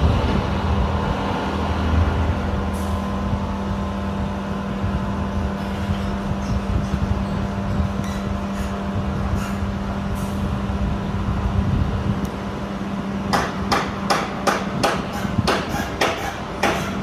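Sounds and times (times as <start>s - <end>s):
low machine hum: 0.0s - 15.6s.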